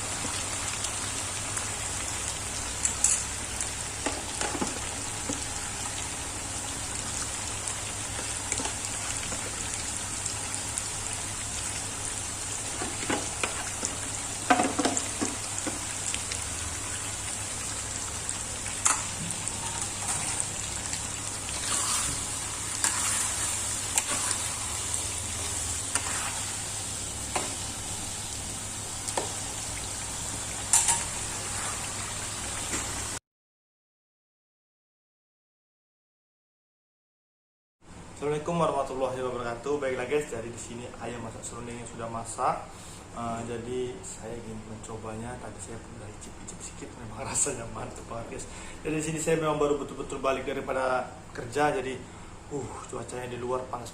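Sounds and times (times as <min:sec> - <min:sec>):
chicken sizzling in a pan: 0:00.0 - 0:33.2.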